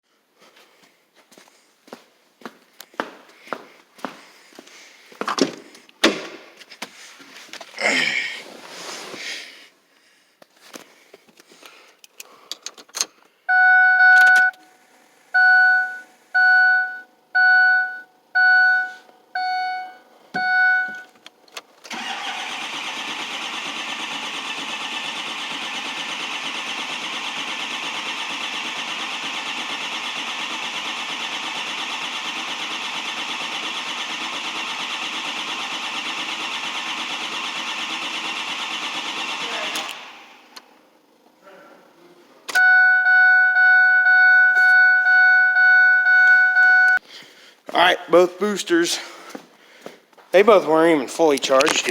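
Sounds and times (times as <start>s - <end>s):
vehicle warning chime dinging: 15.4s - 21.2s, 42.6s - 47.0s
diesel engine cranking: 20.5s - 40.7s.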